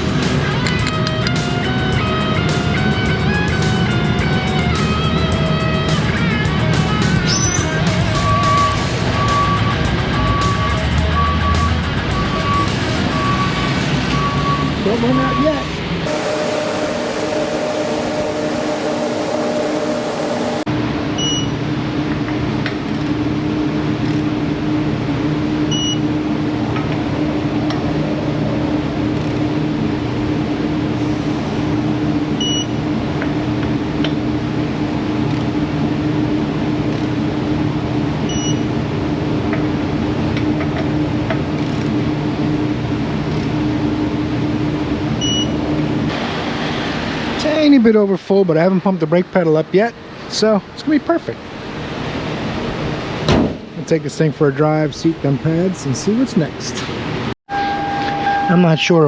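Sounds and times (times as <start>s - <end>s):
electric pump humming: 0.0s - 12.8s, 16.1s - 20.7s
short high beep: 7.3s - 21.6s, 57.5s - 59.0s.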